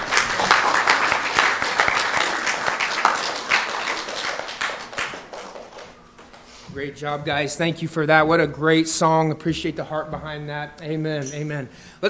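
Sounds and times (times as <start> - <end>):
congregation applauding: 0.0 - 6.5.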